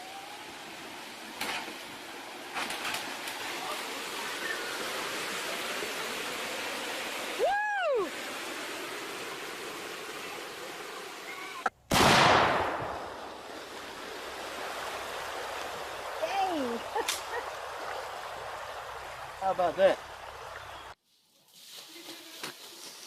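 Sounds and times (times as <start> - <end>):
rushing water: 0.0 - 21.0
sudden burst of water surging: 2.5 - 21.0
high rising and falling cry: 7.4 - 8.2.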